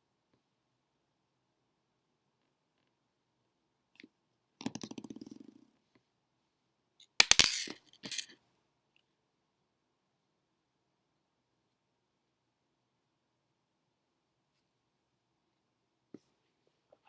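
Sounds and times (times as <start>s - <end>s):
small hard parts clattering: 7.2s - 8.4s.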